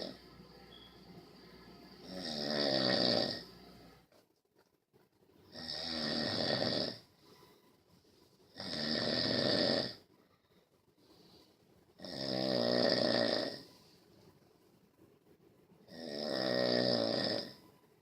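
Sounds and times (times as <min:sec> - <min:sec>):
rattling snores: 0:00.0 - 0:00.2, 0:01.9 - 0:03.6, 0:05.5 - 0:07.1, 0:08.5 - 0:10.1, 0:12.0 - 0:13.8, 0:15.9 - 0:17.6.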